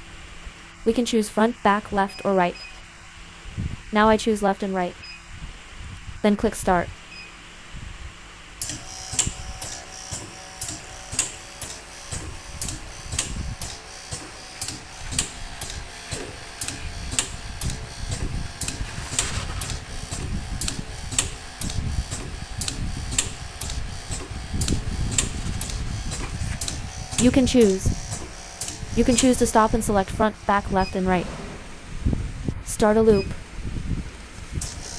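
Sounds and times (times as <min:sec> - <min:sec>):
sharp clicks: 0:08.6 - 0:29.4
air cylinders stroking: 0:24.1 - 0:34.9
low rumble: 0:30.8 - 0:32.7.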